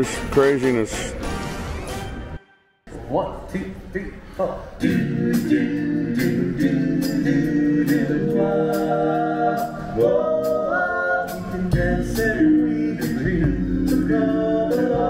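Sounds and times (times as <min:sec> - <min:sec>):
voices singing held notes: 0:04.4 - 0:15.0
steady drum beat: 0:04.9 - 0:15.0.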